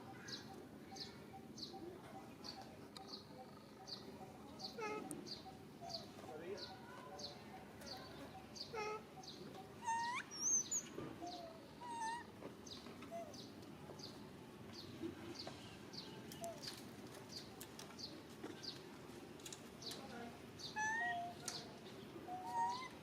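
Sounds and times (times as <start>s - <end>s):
small birds chirping: 0.0s - 23.0s
rising squeaky bird calls: 8.6s - 12.3s, 22.3s - 23.0s.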